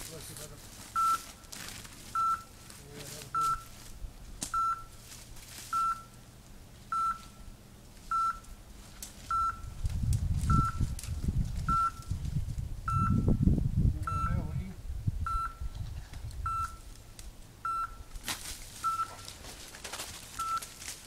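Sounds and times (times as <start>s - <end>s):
electronic beeps: 1.0s - 1.3s, 2.2s - 2.6s, 3.3s - 3.7s, 4.5s - 5.0s, 5.7s - 6.2s, 6.9s - 7.4s, 8.1s - 8.4s, 9.3s - 9.7s, 10.5s - 10.8s, 11.7s - 12.1s, 12.9s - 13.3s, 14.0s - 14.4s, 15.3s - 15.7s, 16.5s - 16.9s, 17.6s - 18.1s, 18.8s - 19.3s, 20.4s - 20.6s
low rumbling: 3.6s - 19.6s.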